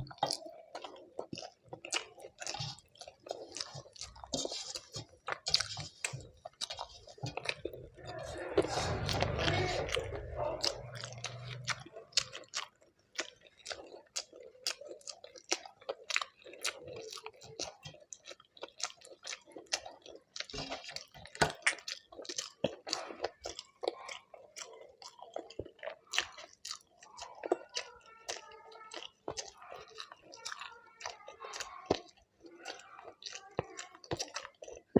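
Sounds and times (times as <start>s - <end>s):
chewing with wet mouth clicks: 0.0s - 8.1s, 10.2s - 34.9s
food crunching: 0.0s - 34.9s.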